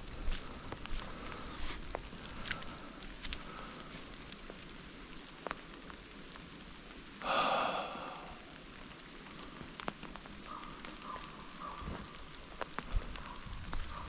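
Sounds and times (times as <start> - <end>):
rain pattering on leaves: 0.0 - 14.0
raven croaking: 7.2 - 8.9, 10.4 - 14.0.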